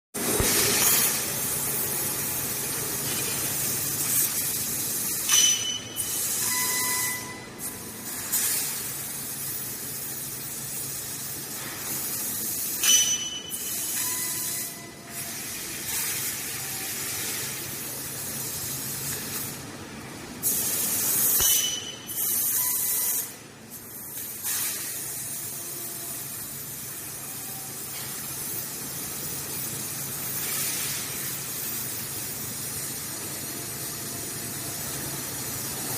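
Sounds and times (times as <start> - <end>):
laser cutting jet hissing: 20.4 - 23.4.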